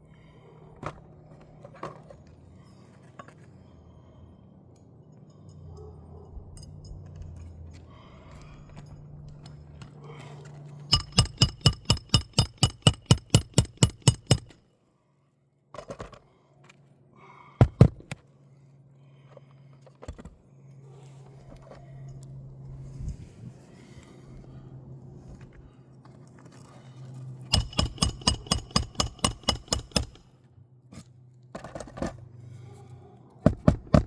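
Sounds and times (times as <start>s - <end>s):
hammer striking roofing nail: 10.9s - 14.6s, 27.5s - 30.2s, 33.5s - 34.0s.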